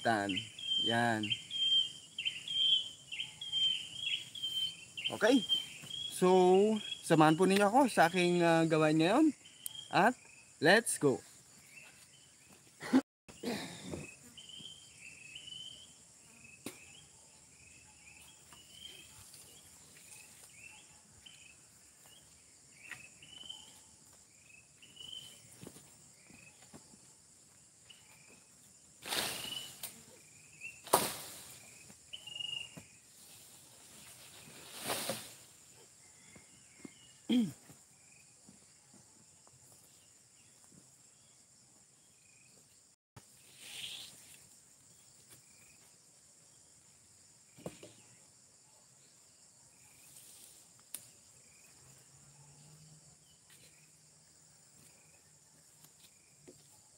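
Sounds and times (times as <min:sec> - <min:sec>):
birds chirping: 0:00.0 - 0:33.2.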